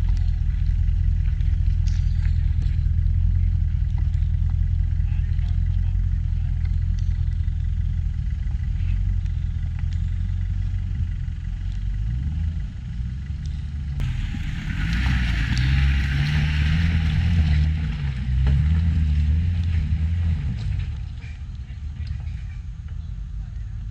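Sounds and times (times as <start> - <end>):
car engine running under load: 0.0 - 23.9.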